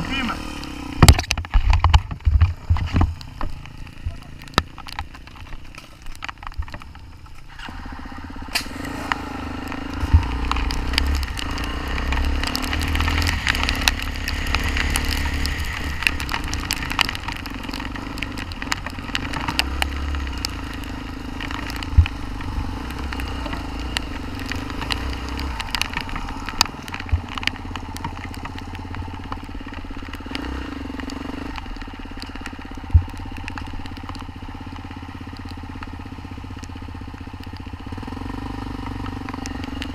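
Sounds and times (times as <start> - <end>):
motorcycle engine running: 0.0 - 39.9
sharp knocks and crackles: 0.6 - 39.9.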